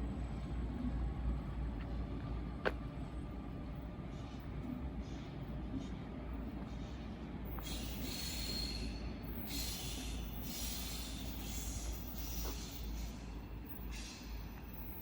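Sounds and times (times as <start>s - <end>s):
train rumbling past: 0.0s - 15.0s
hiss surges: 7.6s - 13.3s
high wheel squeal: 7.6s - 14.4s.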